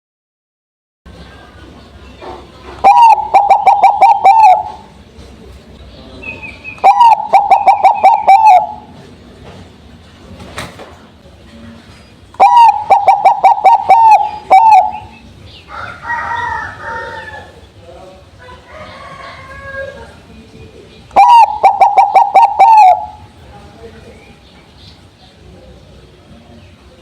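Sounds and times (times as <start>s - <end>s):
other bird calls: 2.1s - 5.0s, 6.1s - 8.9s, 12.4s - 17.7s, 21.0s - 23.3s
dove cooing: 2.8s - 5.0s, 6.8s - 8.9s, 12.4s - 15.2s, 21.2s - 23.3s.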